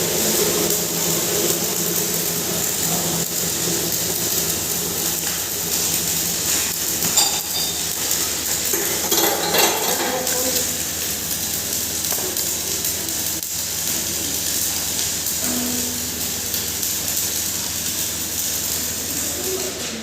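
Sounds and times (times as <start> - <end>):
hammer mill humming and hissing: 0.0 - 20.0.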